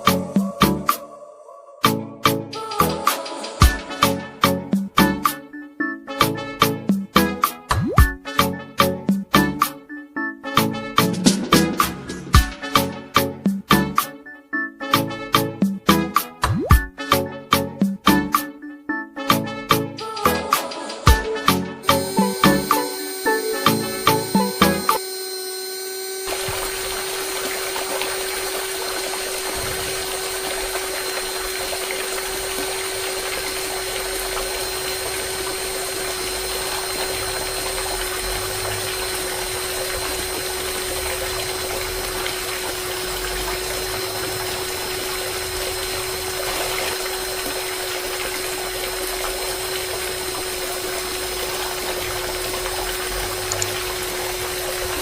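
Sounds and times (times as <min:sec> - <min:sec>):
electric water pump humming: 0:00.0 - 0:01.0, 0:21.8 - 0:55.0
music: 0:00.0 - 0:26.3, 0:27.6 - 0:55.0
water rushing and splashing: 0:26.2 - 0:55.0.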